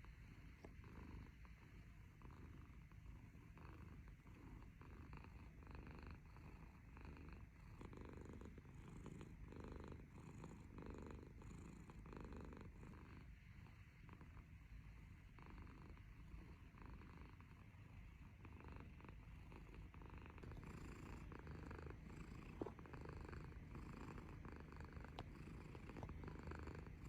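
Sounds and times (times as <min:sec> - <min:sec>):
cat purring: 0:00.0 - 0:27.0.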